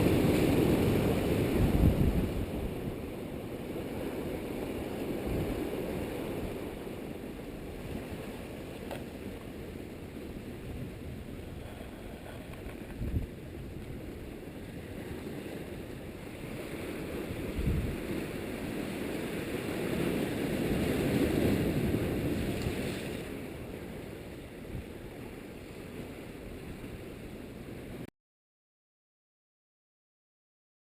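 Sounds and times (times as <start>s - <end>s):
wind buffeting microphone: 0.0s - 25.1s
surf rushing: 0.0s - 28.0s.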